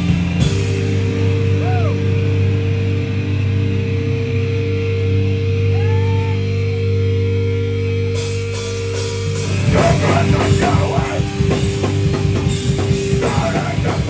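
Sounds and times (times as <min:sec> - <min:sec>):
rock band with drums: 0:00.0 - 0:04.2, 0:07.4 - 0:14.0
droning guitar chord: 0:00.0 - 0:14.0.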